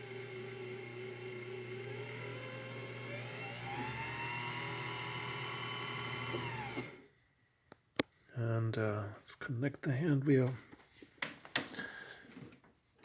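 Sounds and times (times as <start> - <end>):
sewing machine motor whirring: 0.0 - 7.1.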